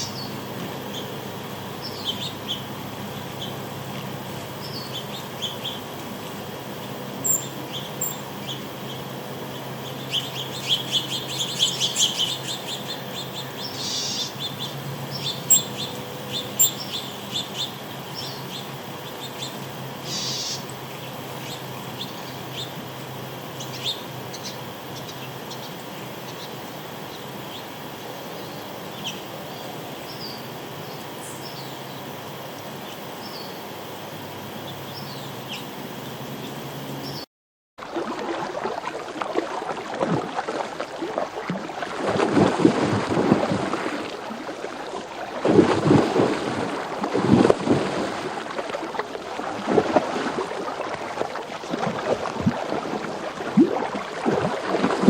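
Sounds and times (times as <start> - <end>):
small birds chirping: 0.0 - 22.8, 23.5 - 33.7, 34.5 - 37.2
steady low hum: 0.0 - 37.3, 37.9 - 55.0.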